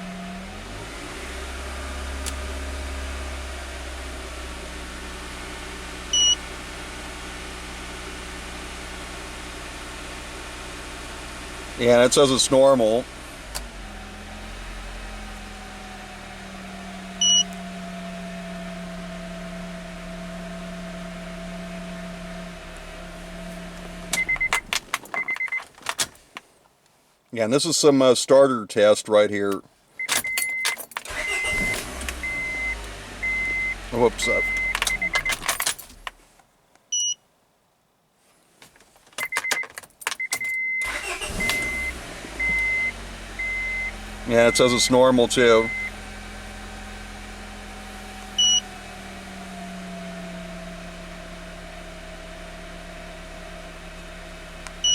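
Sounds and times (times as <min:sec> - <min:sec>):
car engine idling: 0:00.0 - 0:26.5, 0:29.5 - 0:36.4, 0:39.1 - 0:54.9
clicks: 0:24.1 - 0:26.4, 0:34.2 - 0:36.8, 0:38.6 - 0:41.8
short electronic beeps: 0:24.2 - 0:24.6, 0:30.0 - 0:35.4, 0:36.9 - 0:37.2, 0:39.2 - 0:43.9.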